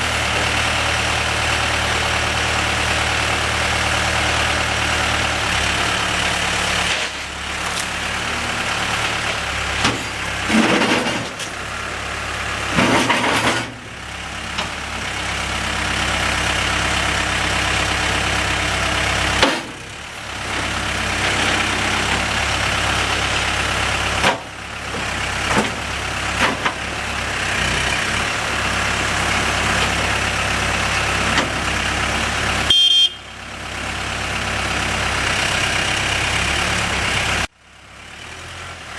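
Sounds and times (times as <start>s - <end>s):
diesel engine revving: 0.0s - 38.9s
short high beep: 32.7s - 33.4s.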